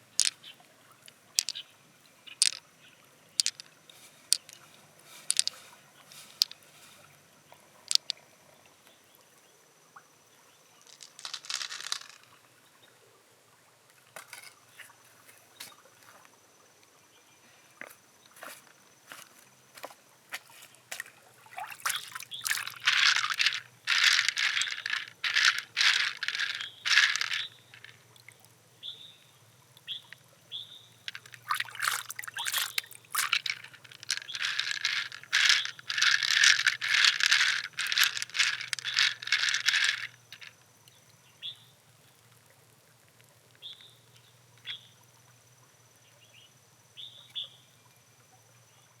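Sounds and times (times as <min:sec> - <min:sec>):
small objects clicking in water: 0:00.0 - 0:02.7, 0:03.3 - 0:07.0, 0:07.8 - 0:08.2, 0:10.8 - 0:12.4, 0:19.8 - 0:28.4, 0:31.0 - 0:40.6.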